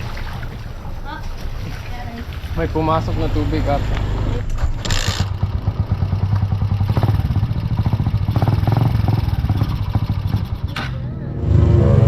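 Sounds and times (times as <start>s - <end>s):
small motorcycle engine pulsing: 3.8s - 12.0s.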